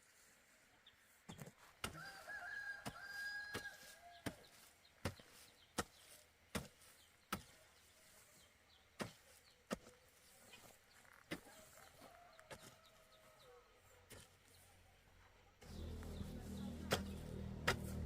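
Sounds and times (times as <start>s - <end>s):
chopping strikes: 16.7s - 18.0s.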